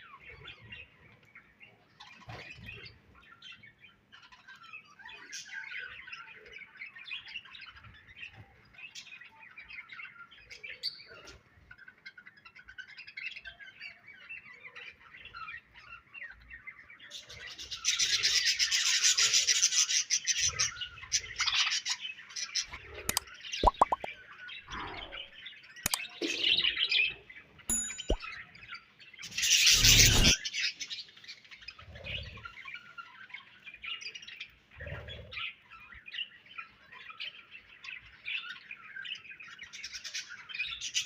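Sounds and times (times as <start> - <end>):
budgerigars chirping and chattering: 28.8 - 41.0.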